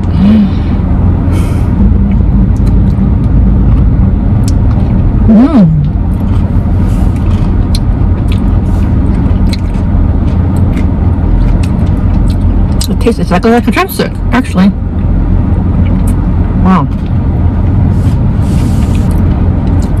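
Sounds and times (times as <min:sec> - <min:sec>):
person humming: 0:00.0 - 0:00.8, 0:05.3 - 0:06.0
car interior rumble: 0:00.0 - 0:20.0.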